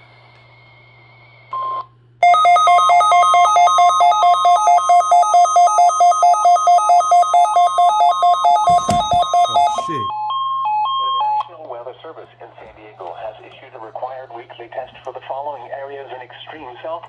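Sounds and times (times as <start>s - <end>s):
rapid electronic alert beeping: 2.2s - 10.1s.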